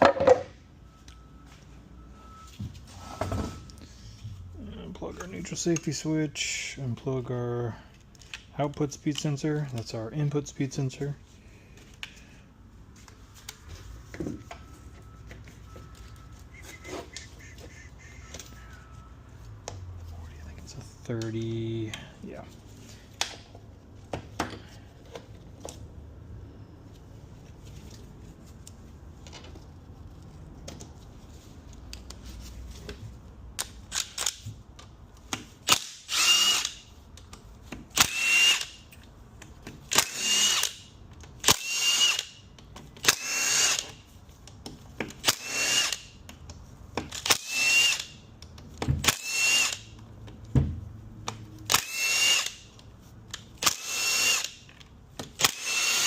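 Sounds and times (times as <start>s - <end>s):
power drill whining: 36.0s - 36.9s, 38.0s - 38.8s, 39.9s - 40.7s, 41.5s - 42.3s, 45.3s - 46.0s, 47.4s - 48.1s, 49.1s - 49.9s, 51.7s - 52.6s, 53.6s - 54.6s, 55.4s - 56.0s.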